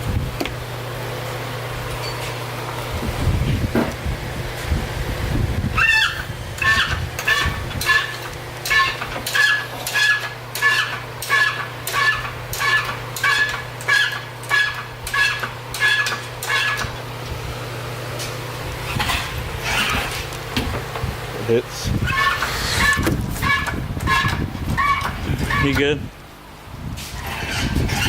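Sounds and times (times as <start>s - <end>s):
steady low hum: 0.0s - 28.0s
engine hoist squeaking: 5.8s - 17.0s, 18.9s - 20.3s, 21.9s - 26.0s, 27.1s - 28.0s.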